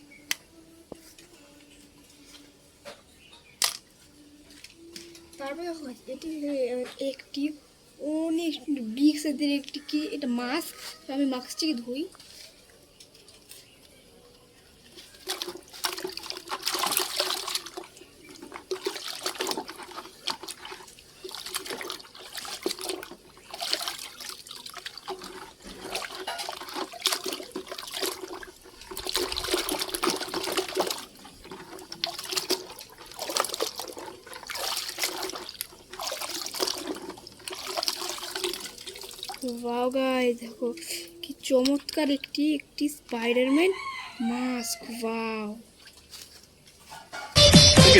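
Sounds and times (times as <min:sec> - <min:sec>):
water splashing and sloshing: 0:14.7 - 0:43.2, 0:44.3 - 0:47.0.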